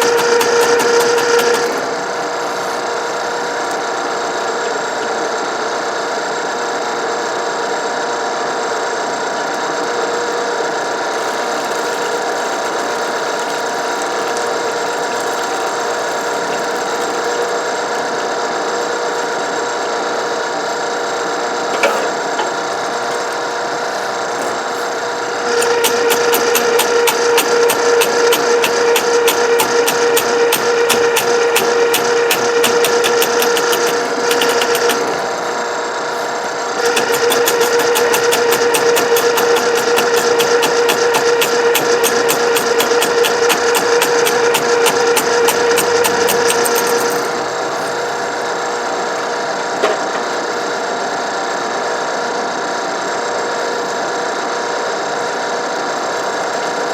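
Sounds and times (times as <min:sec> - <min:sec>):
drain machine humming and ticking: 0:00.0 - 0:56.9.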